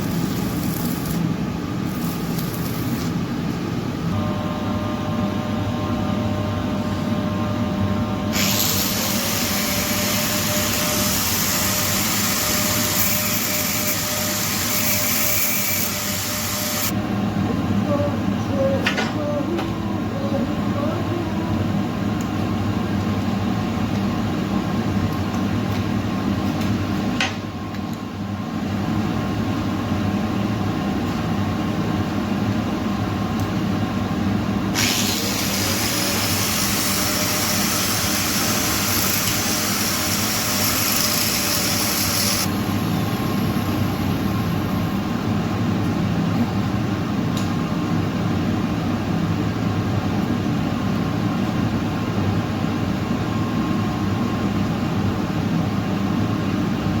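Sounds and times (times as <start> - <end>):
welding arc hissing and crackling: 0.0 - 3.3, 8.3 - 16.9, 34.8 - 44.7
low machine hum: 0.0 - 57.0.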